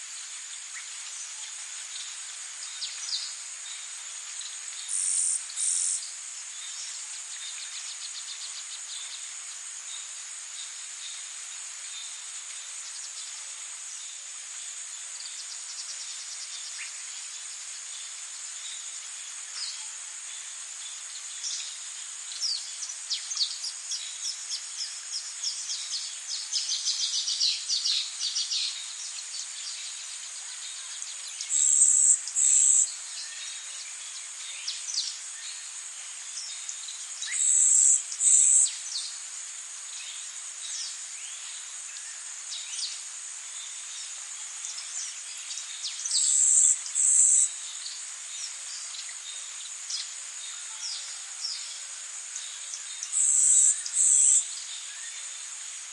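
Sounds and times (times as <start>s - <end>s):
loud insect buzzing call: 37.3s - 38.8s, 46.1s - 47.6s.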